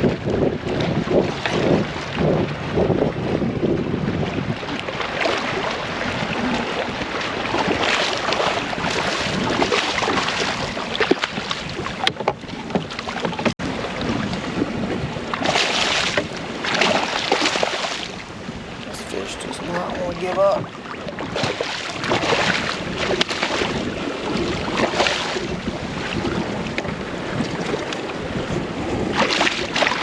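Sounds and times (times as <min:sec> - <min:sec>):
wind noise on microphone: 0:00.0 - 0:04.8, 0:25.4 - 0:29.2.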